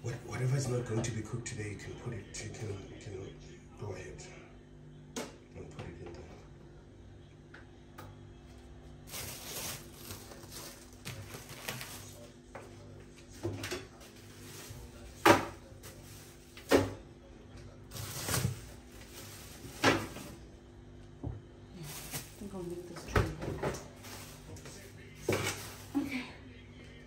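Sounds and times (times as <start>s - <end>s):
packets rustling: 9.1s - 12.2s, 21.8s - 23.0s, 23.8s - 26.1s.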